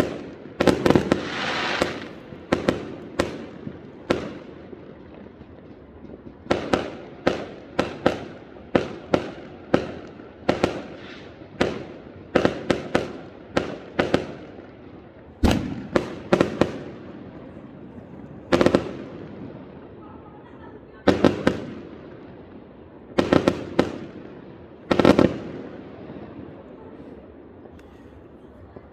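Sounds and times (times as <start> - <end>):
fireworks banging: 0.0 - 4.6, 15.4 - 19.7.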